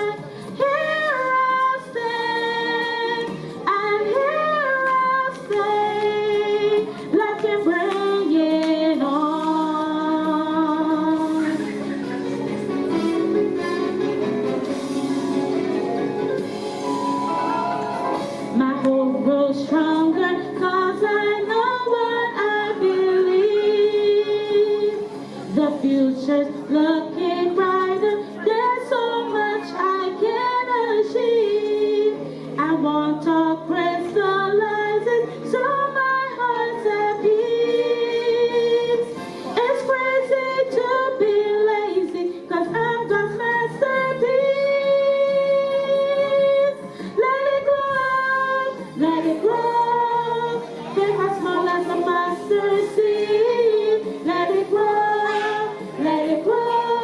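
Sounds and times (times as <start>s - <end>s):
woman singing: 0.0s - 11.8s, 18.4s - 57.0s
backing track: 0.0s - 32.0s.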